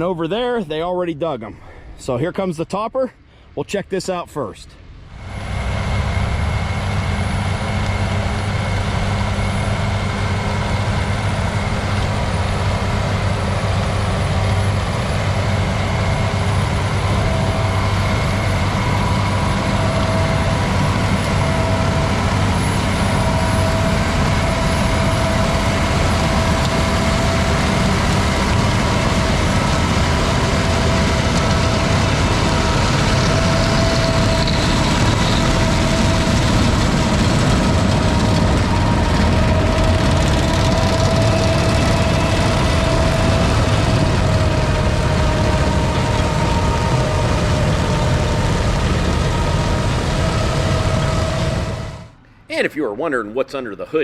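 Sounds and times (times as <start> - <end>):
machinery hum: 0.0 - 53.8
tractor diesel engine running: 5.1 - 52.7.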